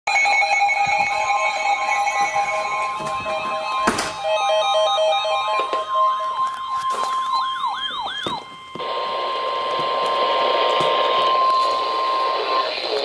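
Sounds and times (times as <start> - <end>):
steady warning alarm tone: 0.1 - 13.0
wailing siren-like sweeps: 2.2 - 13.0
radio static hiss: 8.8 - 13.0.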